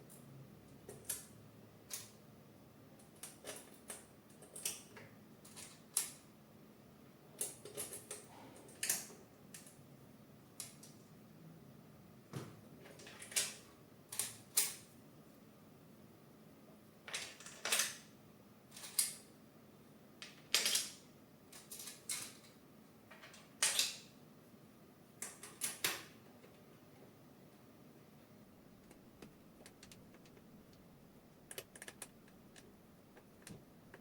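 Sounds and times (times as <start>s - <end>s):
plastic and metal parts clicking: 31.5s - 34.0s.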